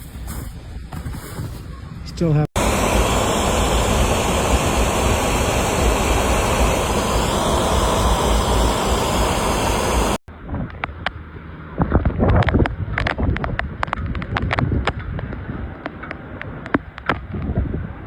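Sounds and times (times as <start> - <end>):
blizzard wind buffeting microphone: 2.6 - 10.7.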